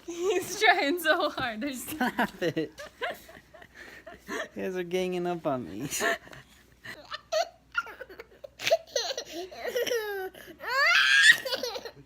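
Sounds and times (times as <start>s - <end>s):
young child laughing and squealing: 8.6s - 11.9s.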